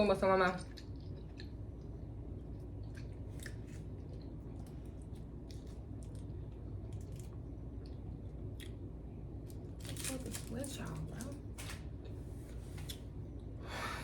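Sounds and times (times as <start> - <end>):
low room hum: 0.0 - 14.0
person chewing hard candy: 0.7 - 8.8.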